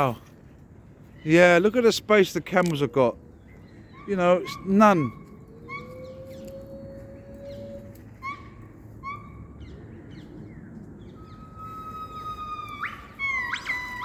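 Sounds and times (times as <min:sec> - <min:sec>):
animal whistled calls: 0:03.8 - 0:09.7, 0:11.1 - 0:14.0
long falling whistle: 0:11.2 - 0:14.0.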